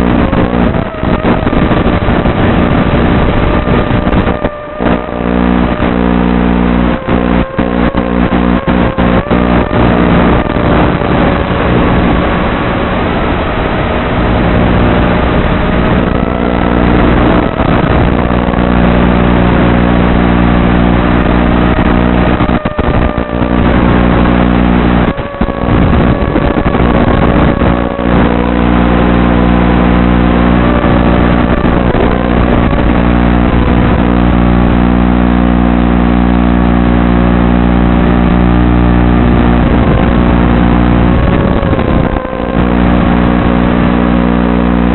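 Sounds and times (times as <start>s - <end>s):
quadcopter motor whine: 0.0s - 33.4s
steady low hum: 0.0s - 44.9s.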